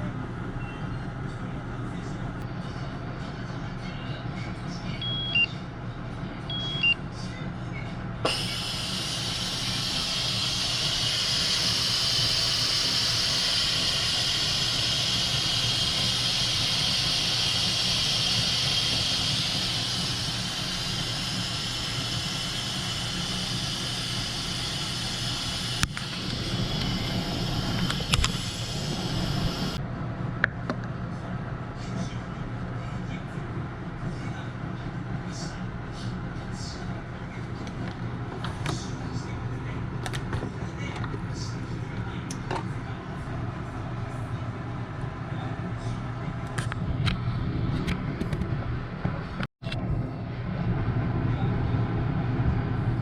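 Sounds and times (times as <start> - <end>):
short electronic beeps: 6.5 - 7.0
pressure cooker steam hissing: 8.3 - 29.8.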